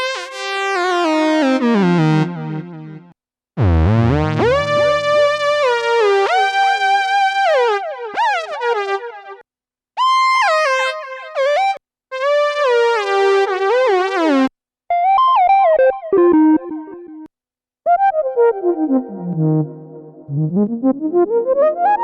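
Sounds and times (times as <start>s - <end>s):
synthesizer lead phrases: 3.6s - 6.1s.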